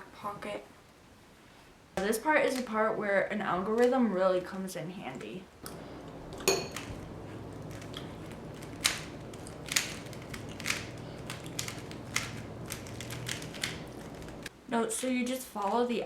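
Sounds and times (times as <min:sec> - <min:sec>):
steady low hum: 0:05.6 - 0:14.6
plastic puzzle cube clicking: 0:08.6 - 0:14.3.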